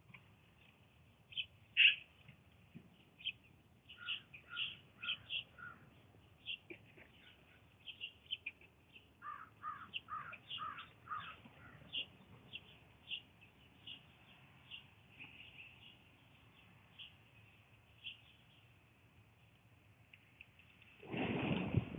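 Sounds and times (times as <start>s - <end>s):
blue jay calling: 1.3s - 2.2s, 3.2s - 18.7s.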